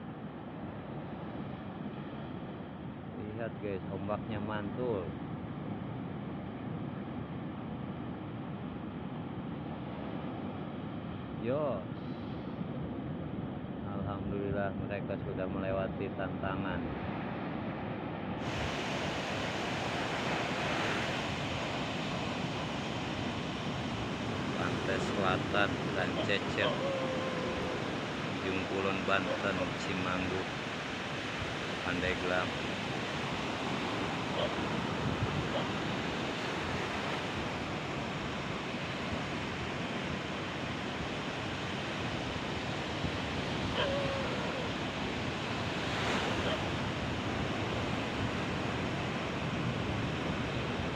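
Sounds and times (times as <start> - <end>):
sea surf breaking on beach: 16.8 - 50.9
wind buffeting microphone: 32.6 - 50.9.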